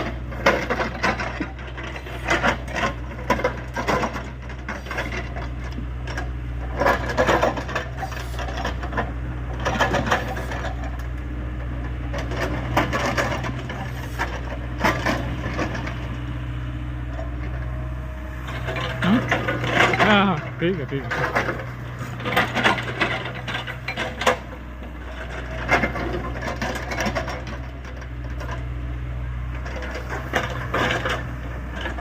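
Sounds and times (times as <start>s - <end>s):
excavator diesel engine running: 0.0s - 32.0s
hydraulic rock breaker hammering: 18.5s - 28.6s.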